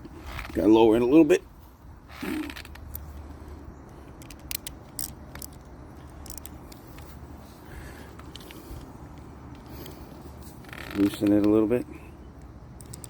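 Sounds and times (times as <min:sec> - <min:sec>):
bicycle brake pad clicks and scraping: 0:04.1 - 0:07.2, 0:12.8 - 0:13.0.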